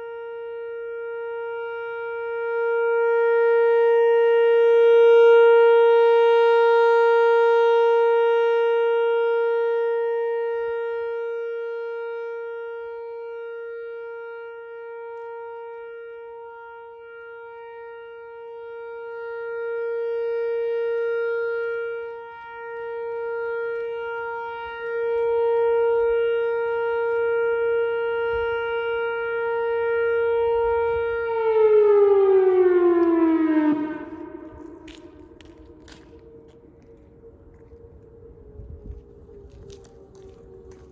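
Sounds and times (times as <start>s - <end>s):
outdoor warning siren steady tone: 0.0s - 40.9s.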